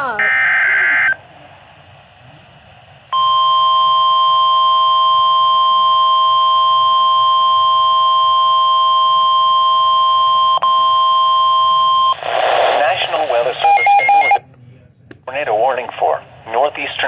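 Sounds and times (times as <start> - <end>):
steady alert tone: 13.7 - 14.4.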